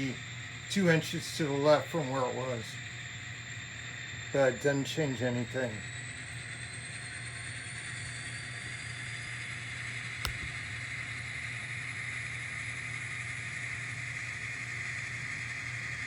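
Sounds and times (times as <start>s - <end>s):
sharp click: 10.2s - 10.6s.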